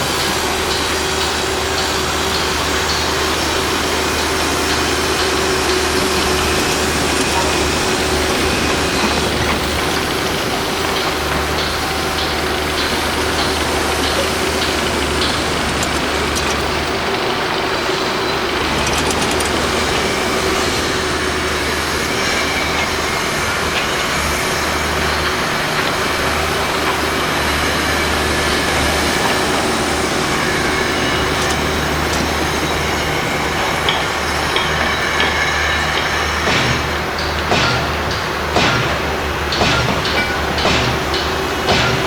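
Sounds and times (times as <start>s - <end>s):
heavy machinery running: 0.0s - 42.0s
metallic clicks and knocks: 36.0s - 42.0s.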